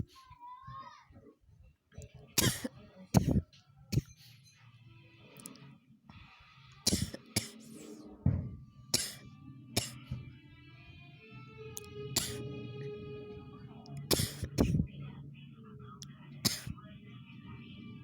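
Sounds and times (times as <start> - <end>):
faint background music: 0.0 - 18.0
person coughing: 2.4 - 3.4, 6.9 - 7.7, 9.0 - 10.1, 12.2 - 12.4, 14.1 - 14.9, 16.5 - 16.8.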